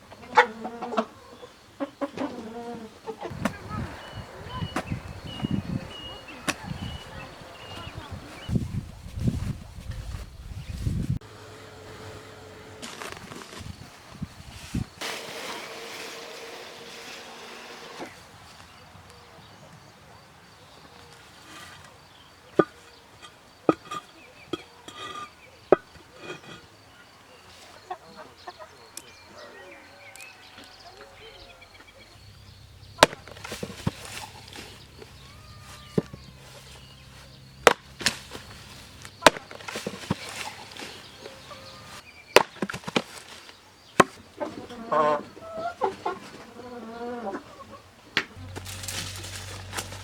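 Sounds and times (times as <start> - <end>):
faint chirping calls: 0.0 - 9.6, 18.1 - 42.4
chopping strikes: 3.3 - 5.5, 33.0 - 34.1, 37.6 - 38.2, 39.2 - 40.3.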